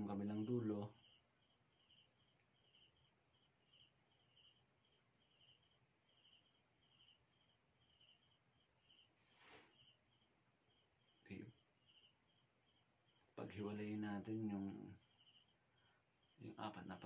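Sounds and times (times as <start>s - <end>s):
night insects chirping: 0.0s - 17.0s.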